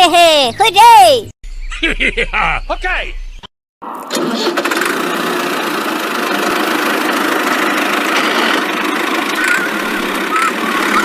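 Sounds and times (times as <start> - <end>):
cartoon tractor engine: 3.8 - 11.0.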